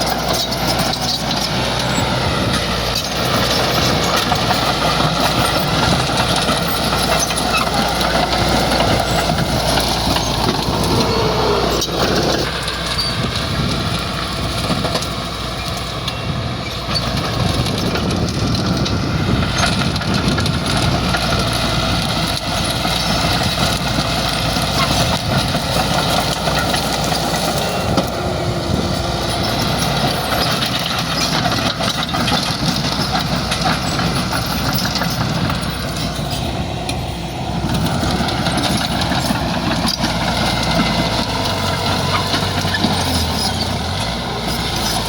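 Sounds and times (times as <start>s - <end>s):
bulldozer diesel engine running: 0.0s - 45.0s.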